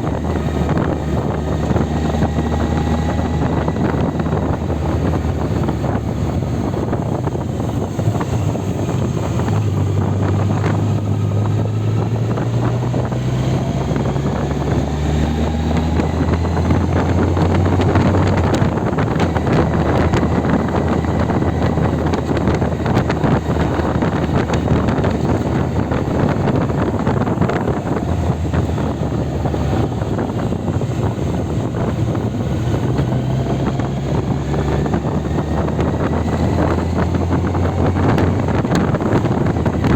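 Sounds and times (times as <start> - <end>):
motorcycle engine accelerating: 0.0 - 39.9
wind buffeting microphone: 0.0 - 39.9.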